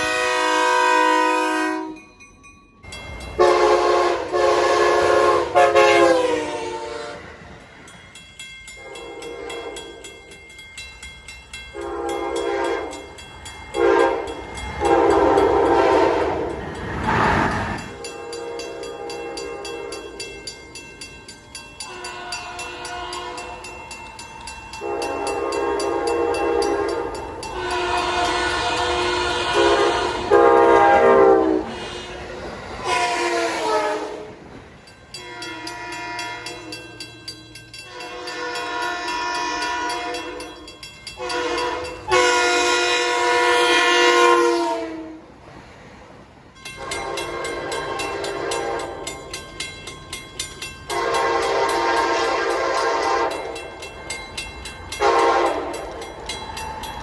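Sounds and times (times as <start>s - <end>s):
locomotive air horns: 0.0s - 2.0s, 3.4s - 7.4s, 8.8s - 10.0s, 11.7s - 13.0s, 13.7s - 20.2s, 21.8s - 23.7s, 24.8s - 34.5s, 35.2s - 36.8s, 37.8s - 45.3s, 46.8s - 49.1s, 50.9s - 53.8s, 55.0s - 56.0s.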